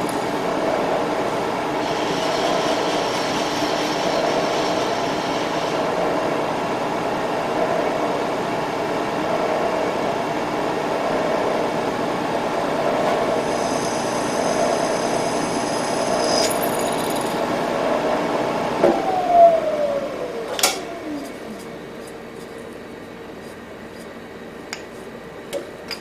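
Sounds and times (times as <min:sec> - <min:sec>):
drill press running: 0:00.0 - 0:06.1, 0:13.0 - 0:17.7
faint high whine: 0:13.3 - 0:18.0.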